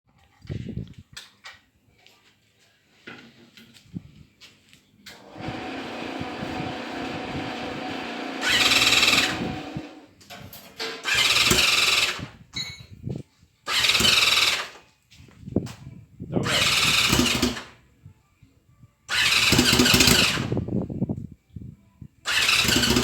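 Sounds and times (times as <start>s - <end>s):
motorcycle engine revving: 5.3s - 10.1s, 16.5s - 17.7s, 19.1s - 20.5s, 22.3s - 23.0s.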